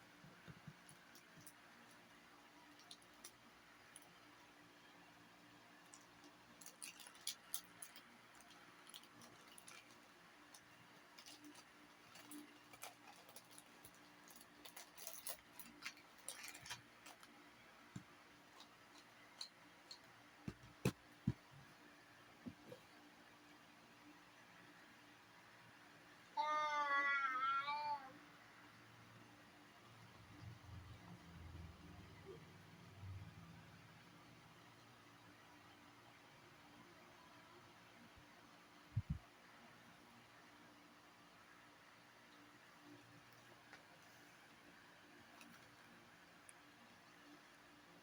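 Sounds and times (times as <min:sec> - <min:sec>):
small clicks and rustles: 0:00.1 - 0:23.1, 0:42.3 - 0:47.7.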